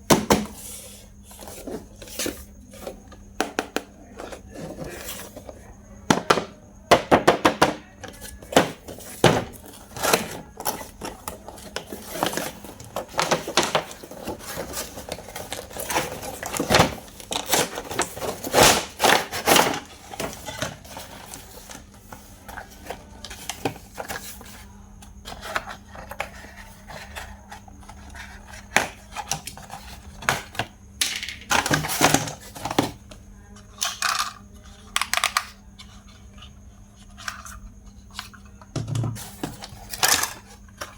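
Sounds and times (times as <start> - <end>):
plastic packaging clicks and rustling: 8.9 - 24.6.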